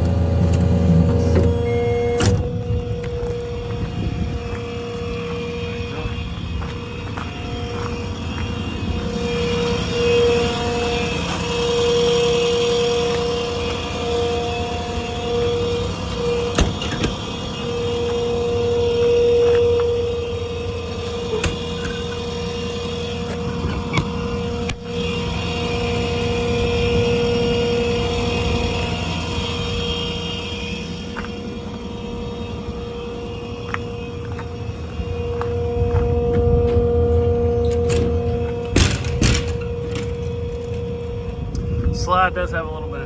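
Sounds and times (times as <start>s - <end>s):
diesel engine running: 0.0s - 43.0s
hydraulic pump whine: 0.0s - 43.0s
sharp clicks and clunks: 37.6s - 41.7s.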